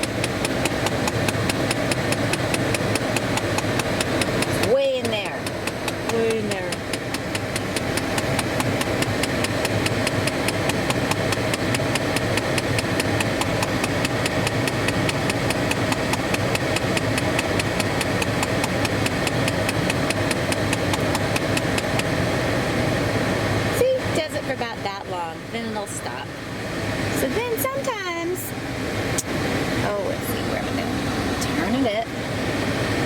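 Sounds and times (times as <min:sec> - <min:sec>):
actuator clicking rapidly: 0:00.0 - 0:22.2
car engine hum: 0:00.0 - 0:33.0.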